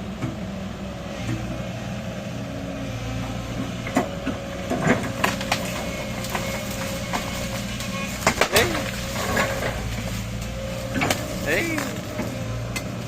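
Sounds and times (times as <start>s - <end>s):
excavator engine running: 0.0s - 13.0s
sharp knocks and clunks: 3.6s - 13.0s.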